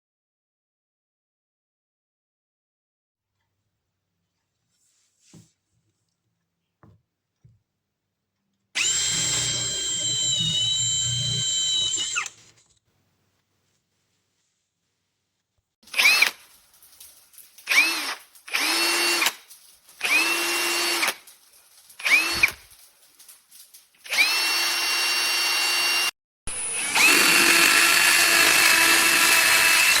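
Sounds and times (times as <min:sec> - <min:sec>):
drill motor whining: 0:08.8 - 0:12.5, 0:15.9 - 0:16.3, 0:17.7 - 0:19.3, 0:20.0 - 0:21.2, 0:22.0 - 0:22.7, 0:24.1 - 0:30.0.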